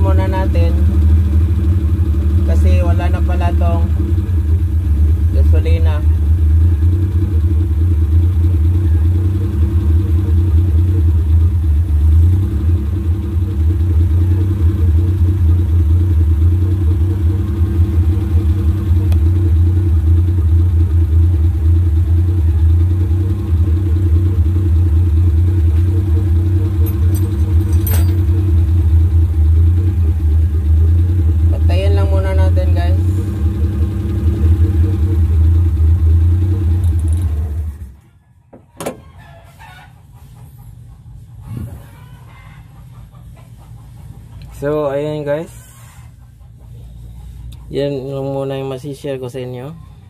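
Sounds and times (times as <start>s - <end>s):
engine idling: 0.0s - 38.6s
metallic clink: 26.8s - 28.4s.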